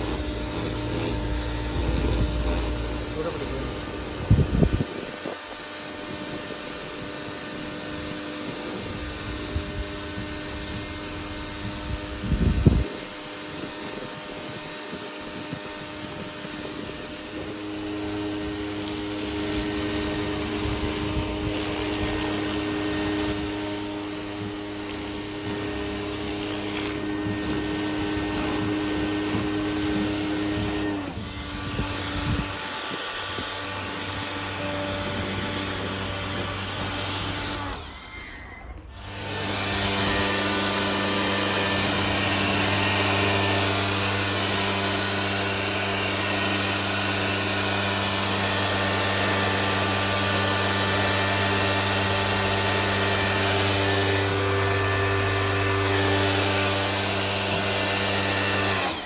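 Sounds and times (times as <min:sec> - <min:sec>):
water spray hissing: 0:00.0 - 0:37.6
pressure washer motor humming: 0:00.0 - 0:59.0.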